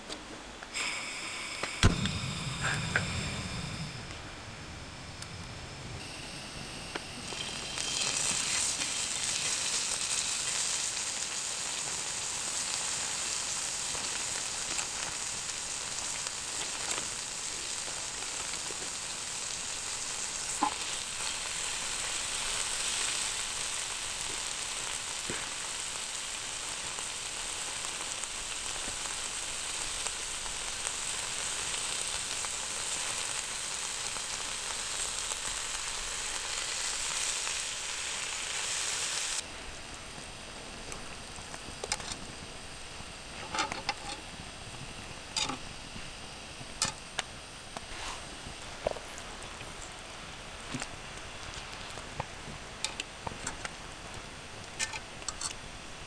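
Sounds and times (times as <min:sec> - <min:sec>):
food sizzling in a pan: 0:00.7 - 0:56.0.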